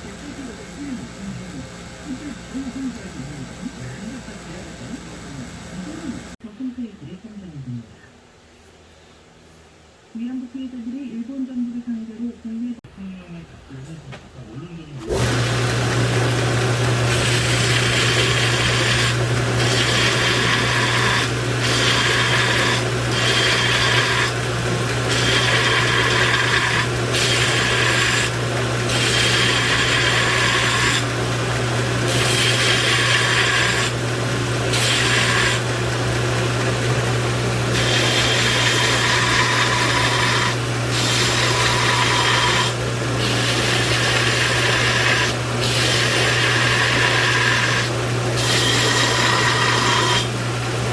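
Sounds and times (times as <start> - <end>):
electric grinder humming: 15.0 - 50.9.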